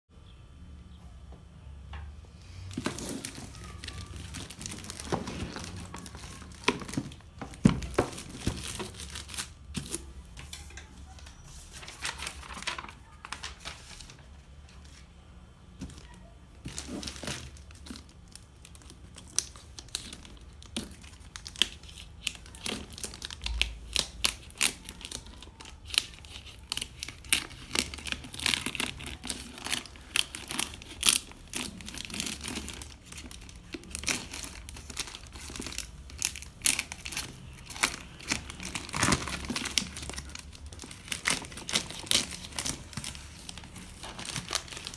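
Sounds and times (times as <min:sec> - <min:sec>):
plastic and paper crinkling: 0:02.4 - 0:15.2, 0:15.8 - 0:44.9.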